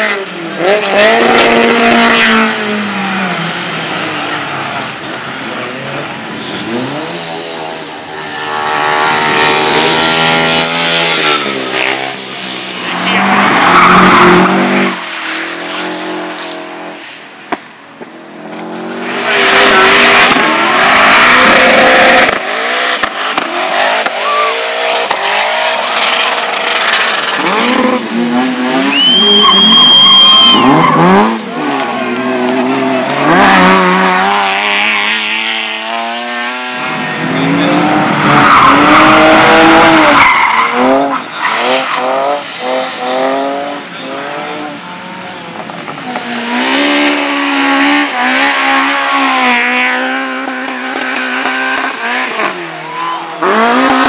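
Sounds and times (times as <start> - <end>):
race car engines revving: 0.0 - 54.0
high squeal: 24.0 - 26.4, 28.8 - 31.1.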